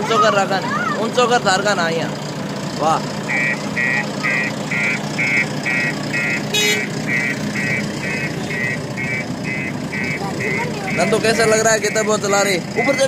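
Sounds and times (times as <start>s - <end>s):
engine hum: 0.0s - 13.0s
reversing alarm beeps: 3.3s - 11.4s.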